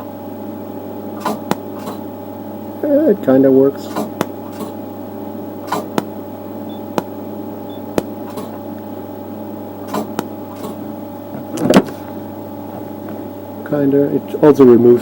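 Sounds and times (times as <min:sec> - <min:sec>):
steady hum: 0:00.0 - 0:15.0
laser pulses snapping on metal: 0:01.2 - 0:02.1, 0:03.9 - 0:04.8, 0:05.6 - 0:08.6, 0:09.8 - 0:10.8.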